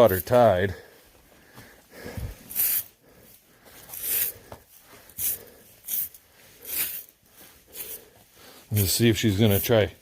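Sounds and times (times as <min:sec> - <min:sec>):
brush strokes on animal coat: 0:05.2 - 0:10.0.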